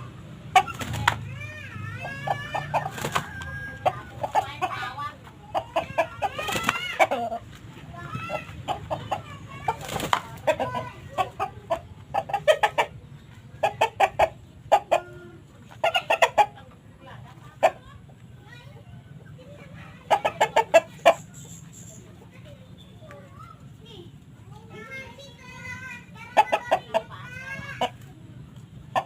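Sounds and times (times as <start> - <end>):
sharp noises: 0.0 - 16.6
chicken clucking: 0.0 - 23.3, 26.2 - 29.0.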